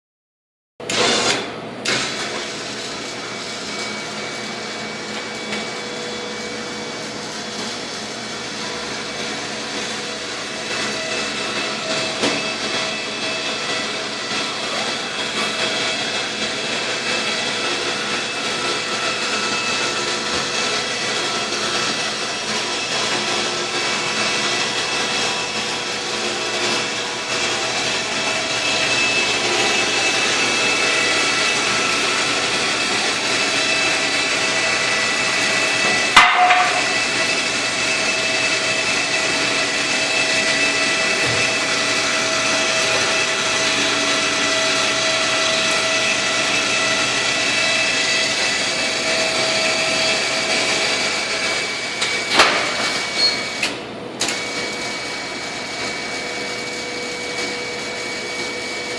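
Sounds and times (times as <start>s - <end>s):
power tool whining: 0.8s - 58.9s
sharp knock: 36.2s - 36.9s.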